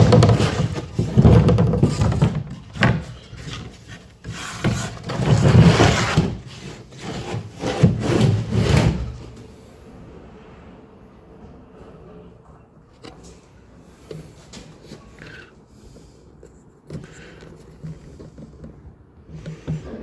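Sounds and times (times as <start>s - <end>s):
wood scraping and rubbing: 0.0s - 9.6s.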